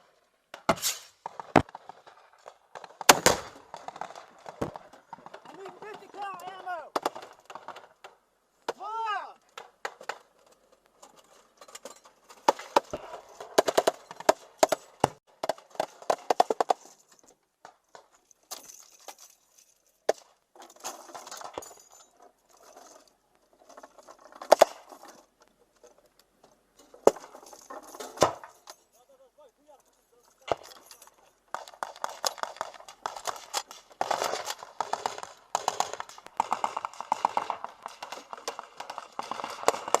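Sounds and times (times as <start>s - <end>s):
voices talking: 4.7s - 7.0s, 8.7s - 9.5s, 28.9s - 31.0s
sharp clicks and knocks: 30.4s - 40.0s.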